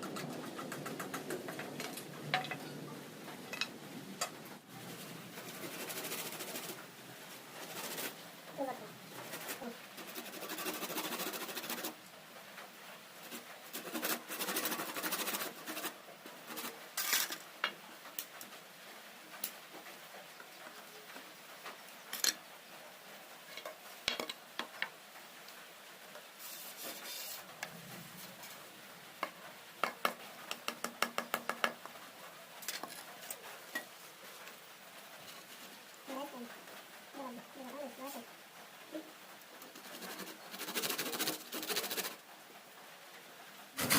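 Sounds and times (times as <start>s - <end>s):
scraping bamboo: 7.5s - 8.2s, 9.1s - 12.0s, 13.2s - 17.4s, 26.4s - 28.6s, 39.6s - 42.2s.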